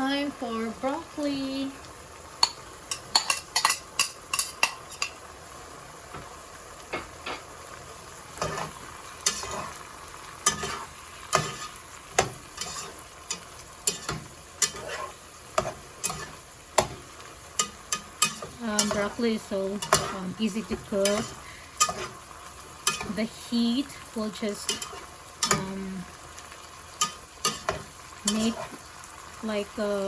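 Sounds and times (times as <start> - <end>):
food sizzling in a frying pan: 0.0 - 30.0
utensil scraping a pan: 8.4 - 23.3, 24.6 - 25.7, 27.0 - 28.8.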